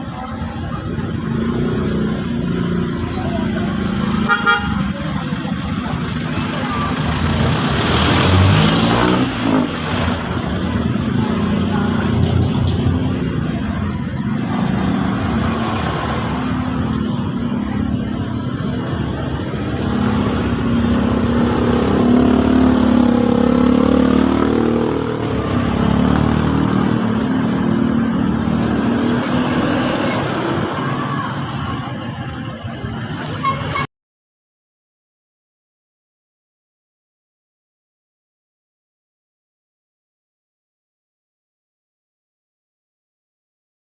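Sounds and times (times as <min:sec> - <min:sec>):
vehicle engine running: 0:00.0 - 0:33.8.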